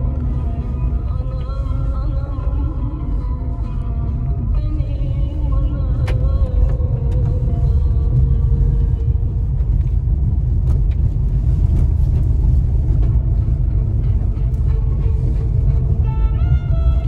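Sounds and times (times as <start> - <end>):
car tyres rumbling on dirt road: 0.0 - 17.0.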